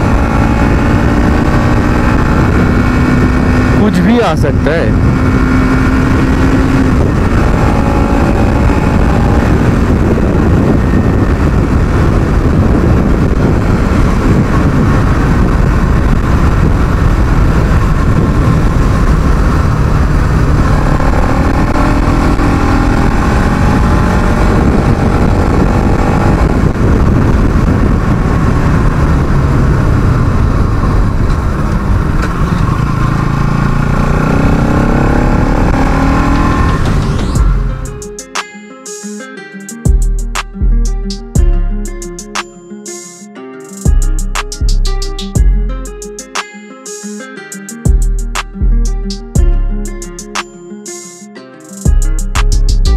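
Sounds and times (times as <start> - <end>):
motorcycle engine revving: 0.0 - 38.1.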